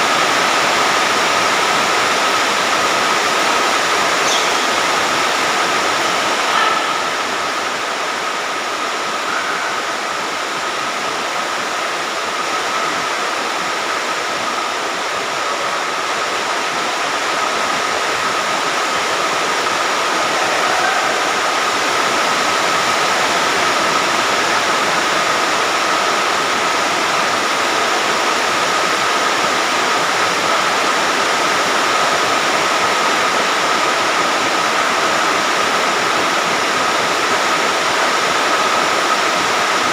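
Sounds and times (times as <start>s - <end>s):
heavy rain: 0.0s - 39.9s
thin high tone: 4.2s - 5.4s.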